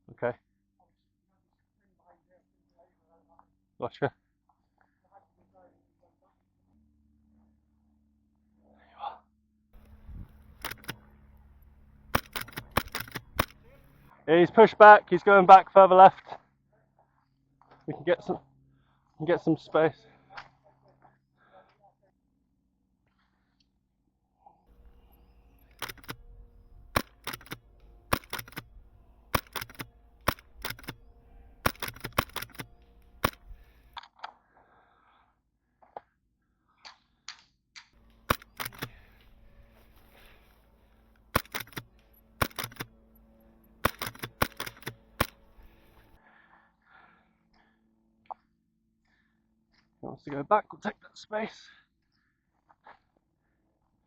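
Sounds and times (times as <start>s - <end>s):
airsoft guns firing: 9.8s - 14.1s, 24.7s - 33.9s, 38.0s - 46.2s.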